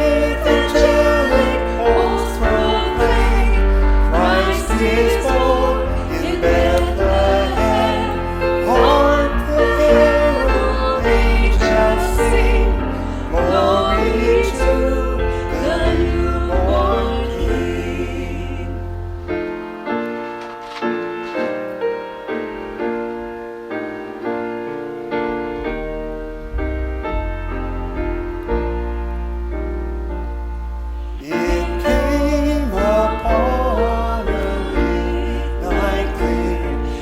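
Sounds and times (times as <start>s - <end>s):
bass: 0.0s - 21.2s, 25.0s - 37.0s
people singing worship song: 0.0s - 21.9s, 31.0s - 37.0s
piano: 0.0s - 37.0s.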